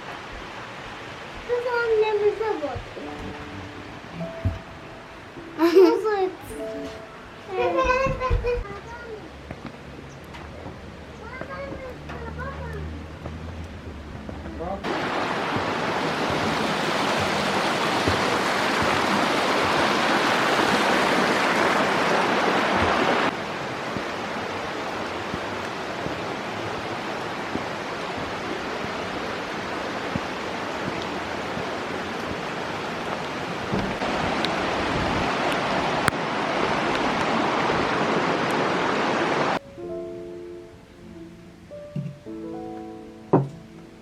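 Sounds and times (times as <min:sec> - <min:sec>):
steady rushing noise: 0:08.8 - 0:39.6.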